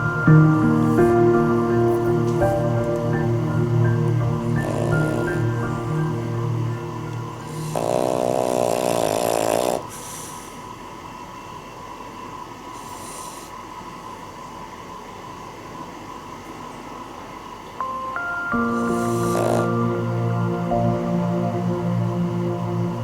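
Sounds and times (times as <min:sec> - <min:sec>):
soft music: 0:00.0 - 0:09.0, 0:17.8 - 0:23.0
dog snoring: 0:04.6 - 0:06.1, 0:07.4 - 0:10.7, 0:12.8 - 0:13.6, 0:18.8 - 0:19.9
dog breathing: 0:07.5 - 0:10.8, 0:12.8 - 0:13.6, 0:18.7 - 0:19.8.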